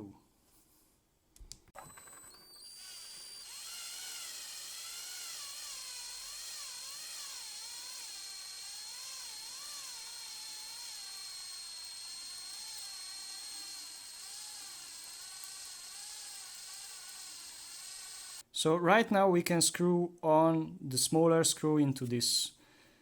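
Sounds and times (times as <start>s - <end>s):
electric drill whining: 1.8s - 18.4s.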